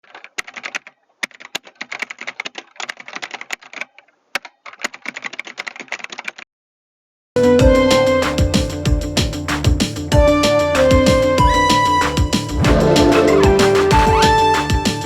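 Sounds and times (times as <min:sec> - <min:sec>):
rapid clicking: 0:00.0 - 0:06.4.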